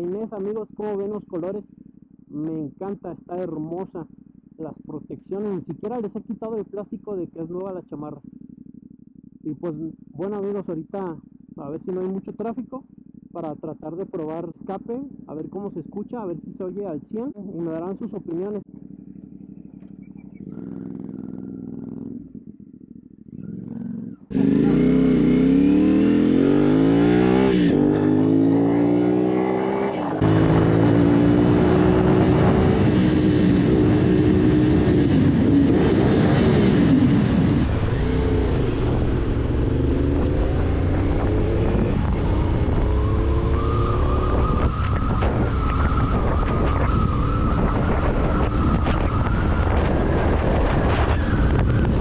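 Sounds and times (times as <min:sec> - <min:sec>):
motorcycle engine revving: 0:08.2 - 0:10.6, 0:18.6 - 0:52.0
wind noise: 0:30.0 - 0:52.0.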